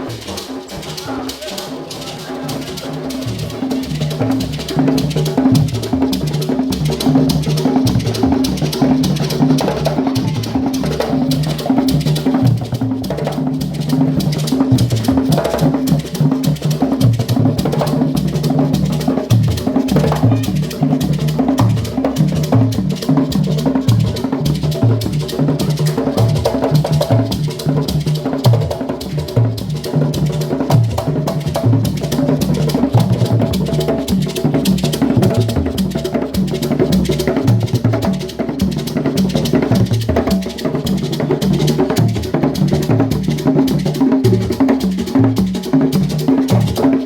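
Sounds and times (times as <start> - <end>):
drum ensemble playing fast rhythm: 0.0 - 47.0.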